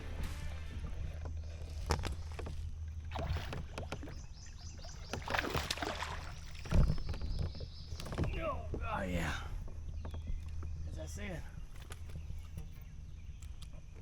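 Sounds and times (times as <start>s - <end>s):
low rumble: 0.0s - 4.8s
splashy rustles: 1.5s - 8.4s.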